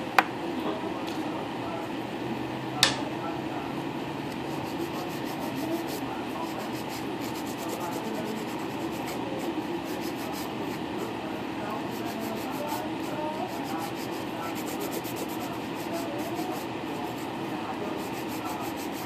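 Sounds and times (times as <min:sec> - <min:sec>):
nail file rubbing on nails: 0:04.3 - 0:19.0.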